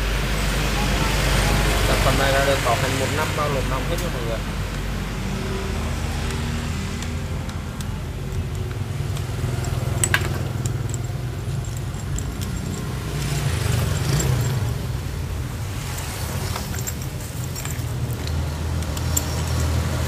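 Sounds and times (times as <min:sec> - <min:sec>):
engine rumble: 0:00.0 - 0:20.0.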